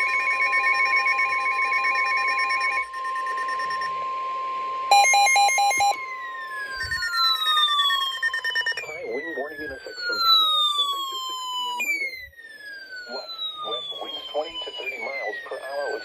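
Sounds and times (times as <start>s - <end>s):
steady warning alarm tone: 0.0s - 16.0s
stepped electronic beeps: 4.9s - 6.0s.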